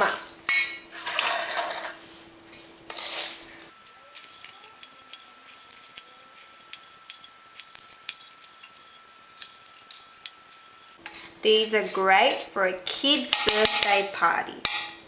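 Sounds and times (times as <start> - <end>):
spoon scraping sticky cereal: 2.5 - 12.6.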